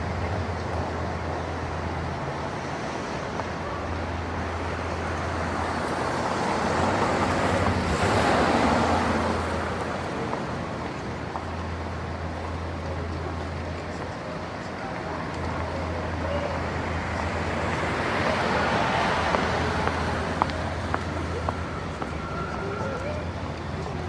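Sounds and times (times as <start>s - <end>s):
low traffic rumble: 0.0s - 24.0s
vehicle passing: 4.6s - 10.9s, 15.5s - 24.0s.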